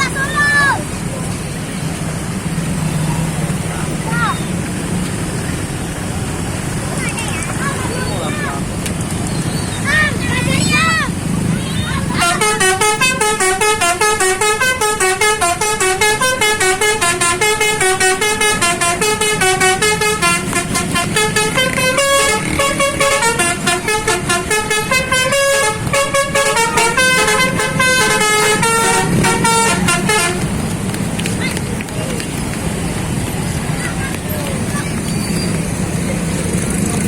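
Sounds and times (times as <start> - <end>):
multi-tone bus horn tune: 12.0 - 30.6.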